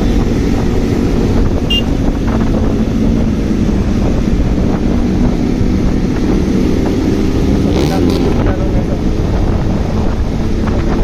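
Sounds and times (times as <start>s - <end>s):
wind buffeting microphone: 0.0s - 11.0s
short high beep: 1.7s - 1.9s.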